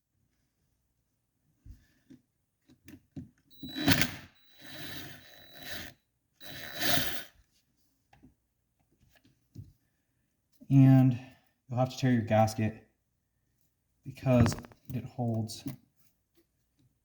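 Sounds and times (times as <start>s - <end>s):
rough tool bursts: 3.5s - 7.4s.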